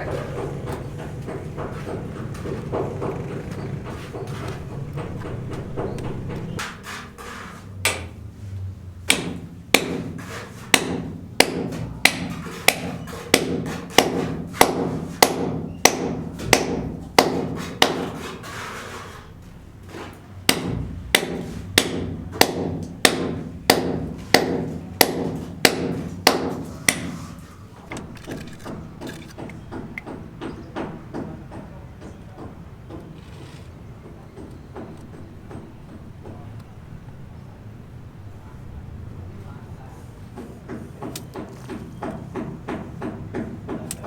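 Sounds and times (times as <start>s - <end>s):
hammer blows: 0.0s - 8.2s.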